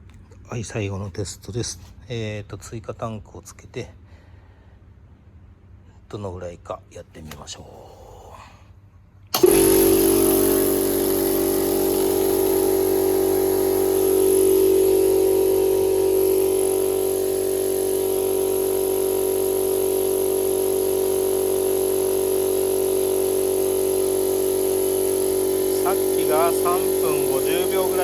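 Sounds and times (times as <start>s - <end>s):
air compressor running: 9.3s - 28.0s.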